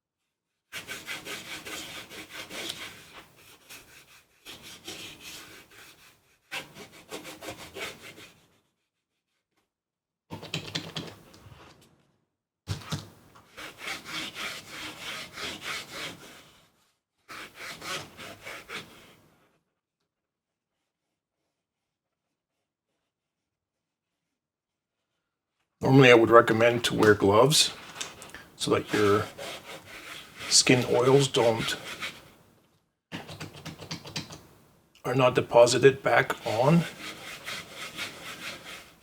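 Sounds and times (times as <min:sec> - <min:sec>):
cloth rubbing against plastic: 0:25.8 - 0:32.5, 0:35.1 - 0:39.0.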